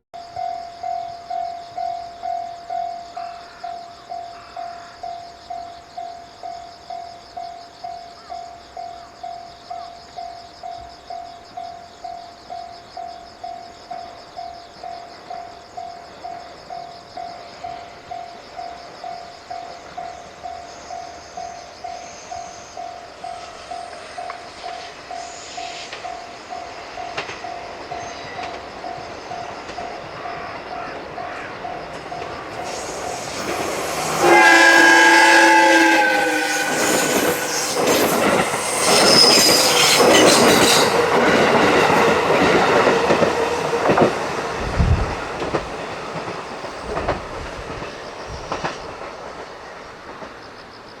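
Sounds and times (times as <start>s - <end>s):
level crossing warning bell: 0.2s - 33.2s
train wheel clatter: 23.1s - 50.9s
train horn: 32.6s - 41.9s.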